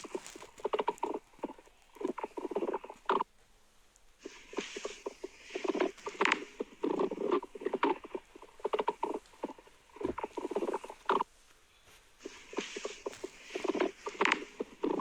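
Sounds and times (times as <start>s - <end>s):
stomach gurgling: 0.0s - 3.5s, 4.1s - 15.0s.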